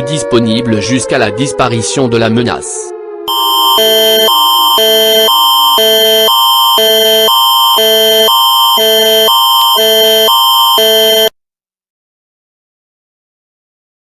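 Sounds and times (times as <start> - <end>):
alternating electronic chords: 3.3 - 11.3
steady high tone: 3.3 - 11.3.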